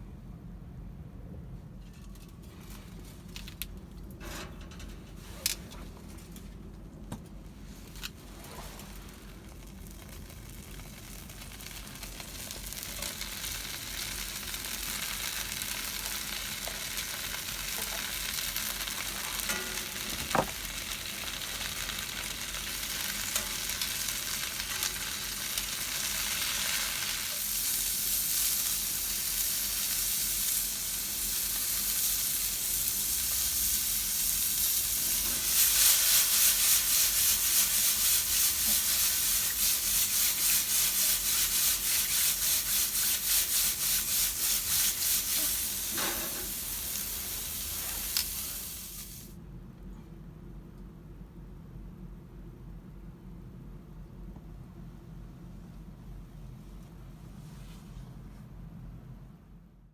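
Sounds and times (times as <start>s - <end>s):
chicken sizzling over campfire: 7.6s - 49.4s.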